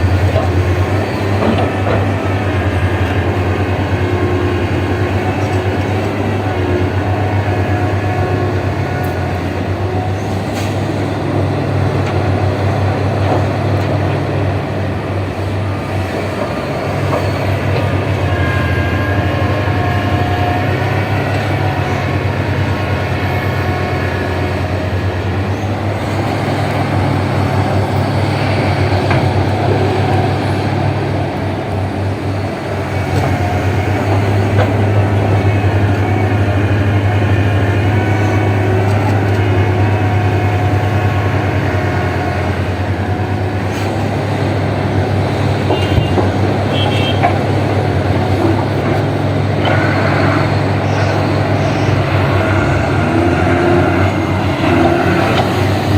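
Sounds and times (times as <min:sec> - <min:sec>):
excavator engine drone: 0:00.0 - 0:55.9
metal and hydraulic squeals: 0:45.7 - 0:47.3, 0:49.6 - 0:52.4.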